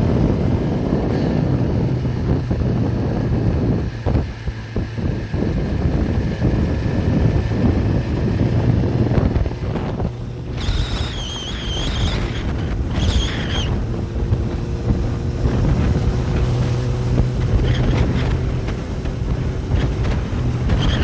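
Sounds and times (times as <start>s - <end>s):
engine rumble: 0.0s - 21.0s
wind on microphone: 0.0s - 21.0s
wavering high-pitched squeals: 10.5s - 13.8s.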